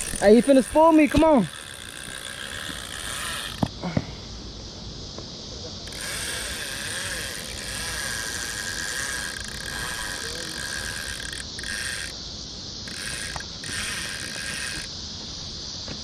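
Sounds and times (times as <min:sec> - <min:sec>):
fishing reel clicker buzzing: 0:00.0 - 0:03.7, 0:05.8 - 0:12.2, 0:12.8 - 0:14.9.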